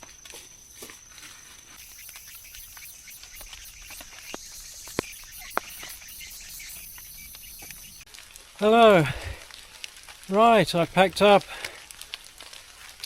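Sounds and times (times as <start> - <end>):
high insect trill: 0.0 - 8.1
light rain hiss: 1.8 - 13.0.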